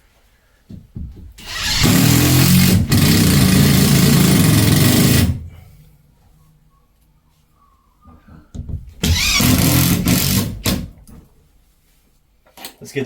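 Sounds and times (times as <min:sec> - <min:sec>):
power drill driving screws: 0:01.4 - 0:05.4, 0:09.0 - 0:11.0.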